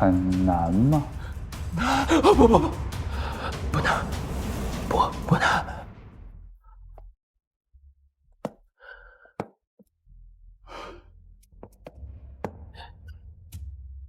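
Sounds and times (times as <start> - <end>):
person sighing heavily: 1.7 - 4.0.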